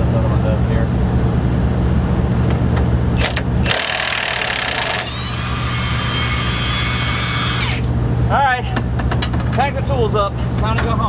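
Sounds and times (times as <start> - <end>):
steady low hum: 0.0 - 11.0
impact wrench hammering: 3.2 - 7.9
impact wrench high whine: 3.2 - 7.9.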